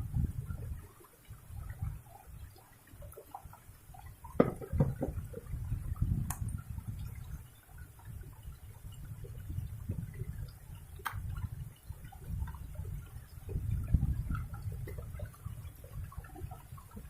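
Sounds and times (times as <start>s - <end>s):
water splashing and dripping: 0.0s - 17.0s
sharp knocks: 4.4s - 5.3s.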